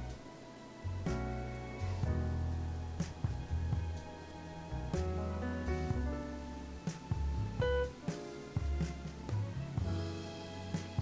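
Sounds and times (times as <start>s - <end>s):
bass line: 0.0s - 0.2s, 0.9s - 8.0s.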